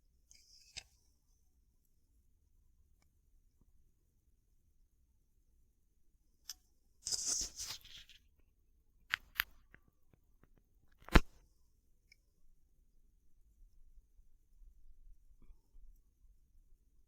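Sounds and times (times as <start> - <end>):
rustling: 7.0 - 8.2.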